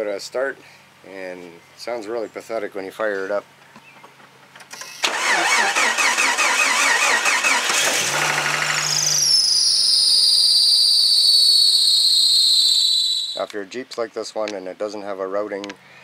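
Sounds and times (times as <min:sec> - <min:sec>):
engine cranking and starting: 0:04.6 - 0:10.0
high-pitched belt squeal: 0:05.1 - 0:13.5.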